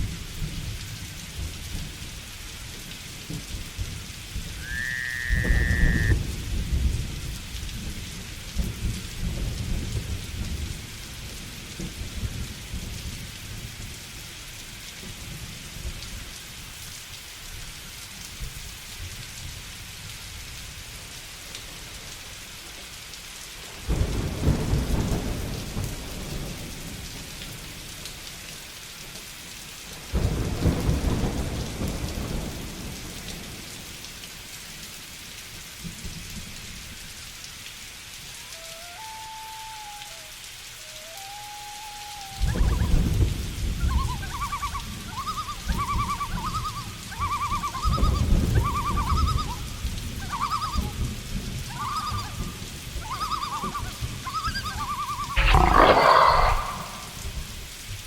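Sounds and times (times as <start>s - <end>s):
steady rain falling: 0.0s - 58.0s
short high whistled note: 4.6s - 6.1s, 38.5s - 42.9s
rolling thunder: 55.4s - 57.6s.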